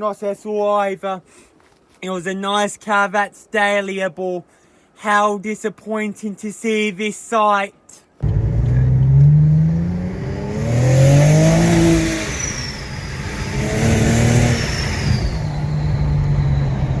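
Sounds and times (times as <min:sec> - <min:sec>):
car engine revving: 0:08.2 - 0:17.0
high whine gliding downward: 0:08.2 - 0:17.0.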